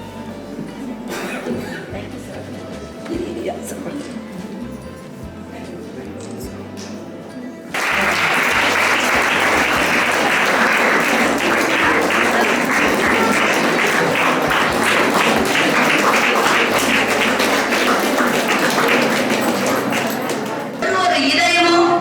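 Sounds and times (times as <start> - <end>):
audience applauding: 7.7 - 21.0.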